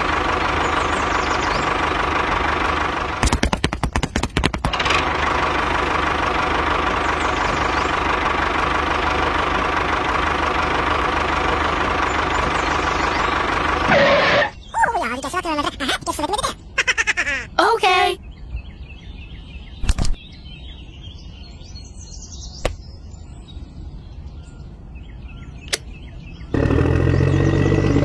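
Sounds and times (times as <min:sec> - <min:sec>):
small motor running and stuttering: 0:26.6 - 0:28.0.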